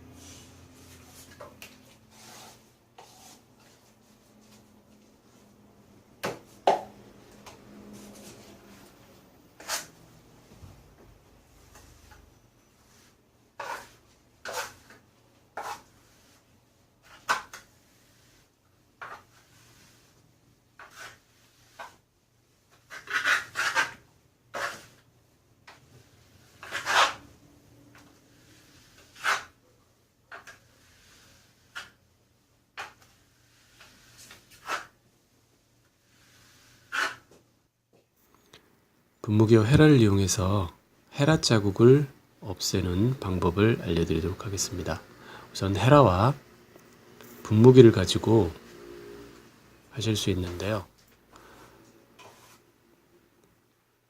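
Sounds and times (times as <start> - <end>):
trowel scraping on wall: 0.3 - 3.9, 9.6 - 10.0, 11.5 - 22.1, 22.7 - 27.3, 27.9 - 29.6, 30.3 - 32.0, 32.7 - 35.0, 35.9 - 37.4, 52.2 - 52.6.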